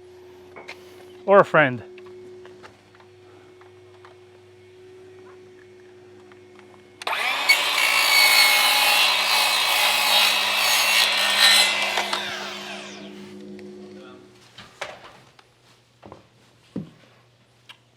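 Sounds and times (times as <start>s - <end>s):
electric power tool running: 7.0s - 13.6s.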